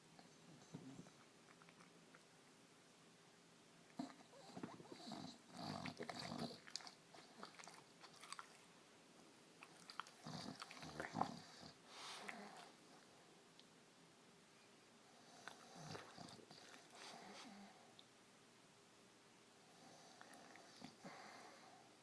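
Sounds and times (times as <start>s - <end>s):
puppy snoring: 0.2s - 1.2s, 4.0s - 8.3s, 9.8s - 12.8s, 15.0s - 17.9s, 19.6s - 21.9s
noisy crackly breathing: 9.8s - 13.4s, 15.0s - 18.0s, 19.6s - 22.0s.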